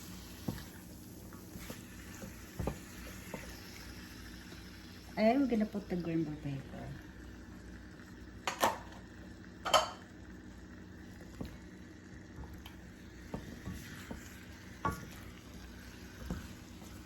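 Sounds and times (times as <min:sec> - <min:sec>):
faint sizzle: 0:00.0 - 0:17.0
light utensil taps: 0:02.2 - 0:03.4
utensil clanking against a pan: 0:09.6 - 0:10.1, 0:12.3 - 0:17.0.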